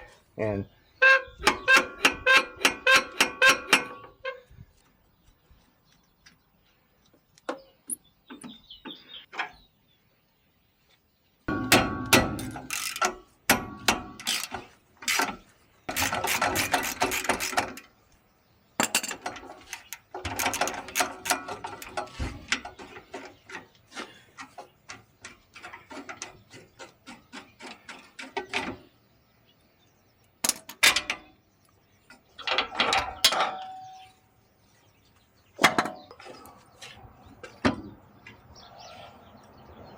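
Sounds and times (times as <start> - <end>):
metal tools clanking: 11.5 - 17.9, 18.8 - 28.9, 32.2 - 34.3
ratchet wrench clicking: 12.5 - 13.2, 14.2 - 17.9.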